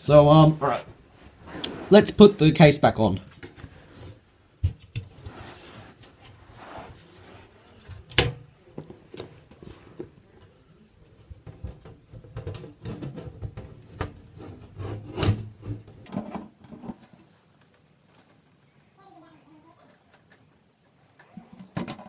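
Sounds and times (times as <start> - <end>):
panel scraping and rattling: 14.4 - 18.4.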